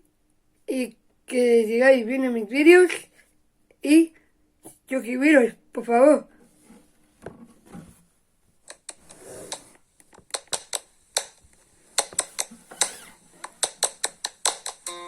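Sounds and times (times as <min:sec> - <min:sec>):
soft rustle: 0:06.3 - 0:09.9
sharp irregular clicks and taps: 0:08.7 - 0:11.4, 0:13.4 - 0:14.9.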